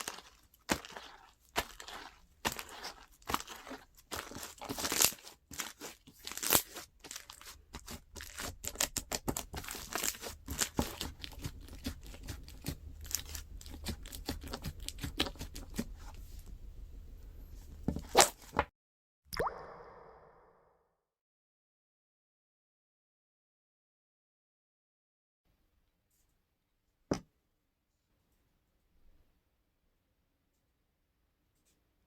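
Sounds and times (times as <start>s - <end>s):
crunchy slime crackling: 0.0s - 16.1s.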